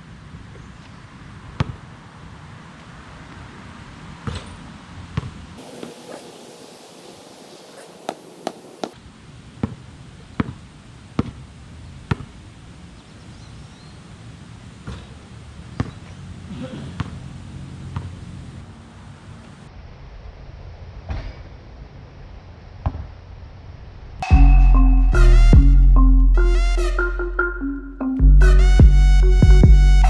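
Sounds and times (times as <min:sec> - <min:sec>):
basketball bouncing: 0:05.6 - 0:09.0.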